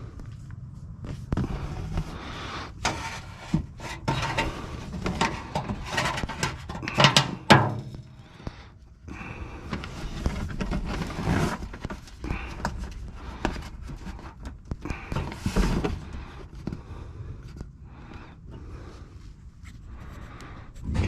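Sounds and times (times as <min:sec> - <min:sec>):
hands handling plastic panel: 0:02.8 - 0:08.2.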